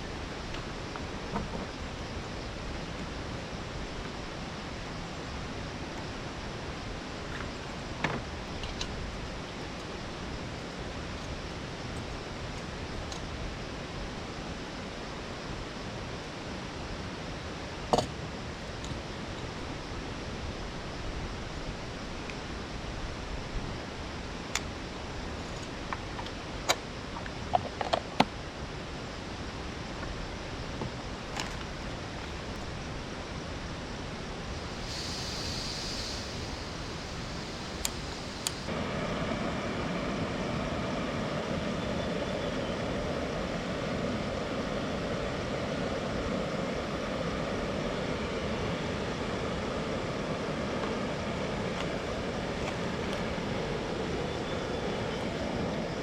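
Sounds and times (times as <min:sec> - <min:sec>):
waterfall rushing: 0:34.6 - 0:38.8.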